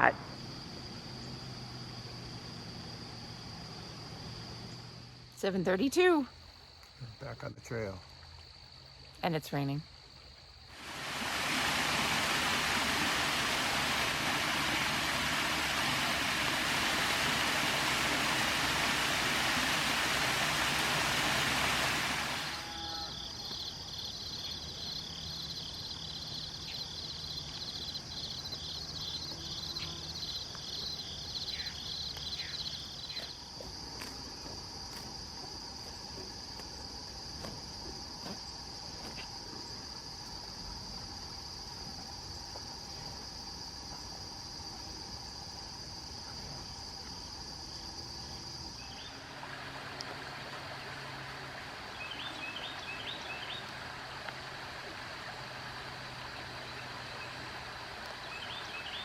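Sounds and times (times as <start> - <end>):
insect chorus high buzz: 0.0 - 59.0
steady rain hiss: 0.0 - 59.0
fast pulsing insect trill: 22.4 - 33.4.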